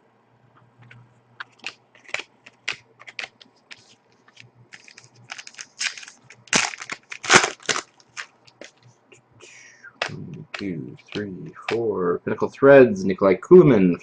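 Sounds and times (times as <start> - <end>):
wrapper crinkling and tearing: 4.3 - 8.8.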